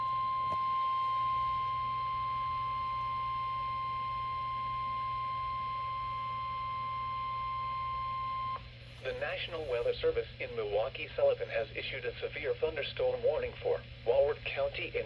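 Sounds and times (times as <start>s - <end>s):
long steady warning beep: 0.0s - 9.8s
faint low hum: 0.0s - 15.0s.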